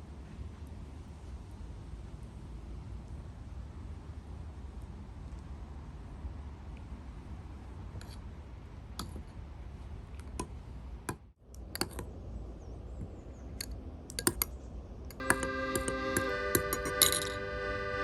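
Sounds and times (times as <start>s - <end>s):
light clicks and taps: 13.0s - 14.5s, 15.1s - 17.4s
music with bell-like tones: 15.2s - 18.0s.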